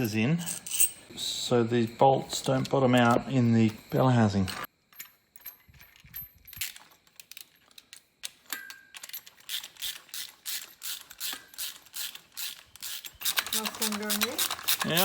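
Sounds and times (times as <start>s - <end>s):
metallic clinks: 0.0s - 1.1s, 2.9s - 11.9s
ratchet wrench clicking: 6.6s - 15.0s.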